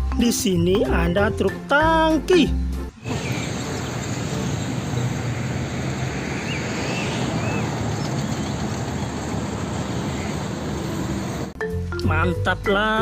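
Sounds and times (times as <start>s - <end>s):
outdoor rushing noise: 2.9s - 11.6s.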